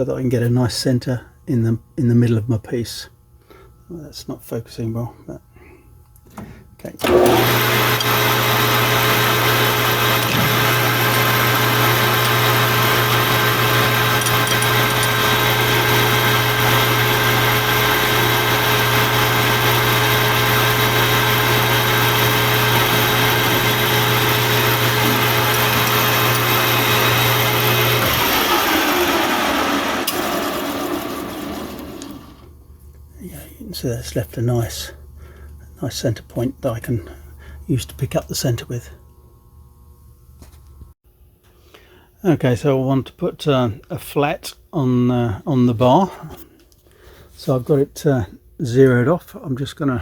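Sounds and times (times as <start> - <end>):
drill cutting plastic bar: 7.0 - 32.5
lathe motor hum: 7.0 - 32.5.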